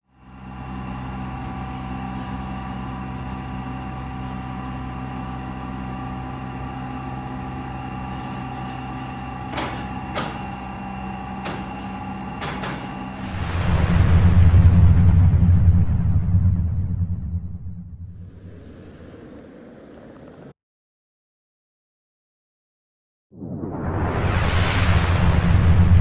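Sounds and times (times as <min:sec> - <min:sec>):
wood planer humming: 0:00.2 - 0:13.3.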